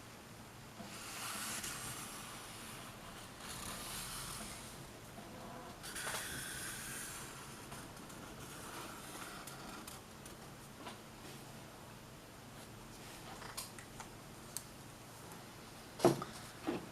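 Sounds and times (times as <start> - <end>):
pen scratching on paper: 0.9 - 4.7.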